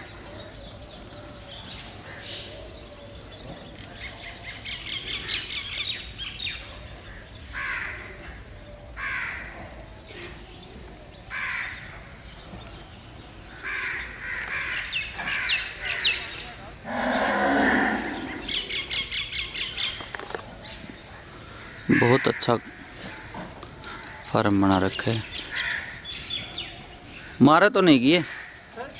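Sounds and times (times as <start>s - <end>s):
harsh bird calls: 0.0s - 28.9s
small birds twittering: 0.0s - 28.9s.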